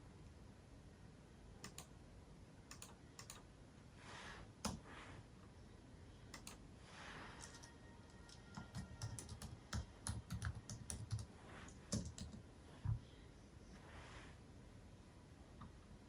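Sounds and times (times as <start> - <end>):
keyboard keystroke clicks: 1.6 - 1.9, 6.3 - 6.6.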